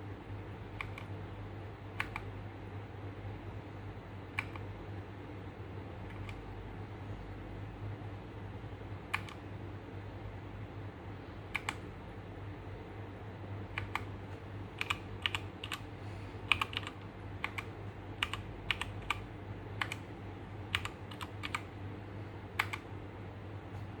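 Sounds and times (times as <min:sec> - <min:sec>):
steady low hum: 0:00.0 - 0:24.0
mechanical keyboard typing: 0:00.8 - 0:01.2, 0:02.0 - 0:02.3, 0:04.3 - 0:04.7, 0:06.1 - 0:06.5, 0:09.1 - 0:09.4, 0:11.5 - 0:11.8, 0:13.7 - 0:14.1, 0:14.8 - 0:15.9, 0:16.5 - 0:20.1, 0:20.7 - 0:21.7, 0:22.6 - 0:22.8.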